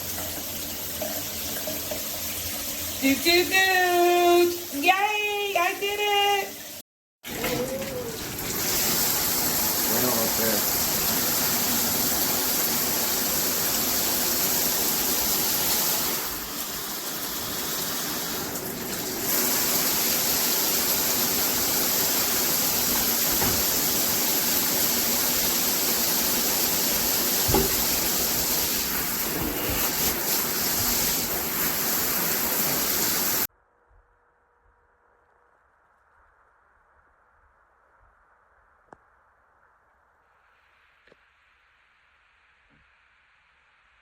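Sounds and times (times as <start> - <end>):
shower head spraying water: 7.3 - 33.5.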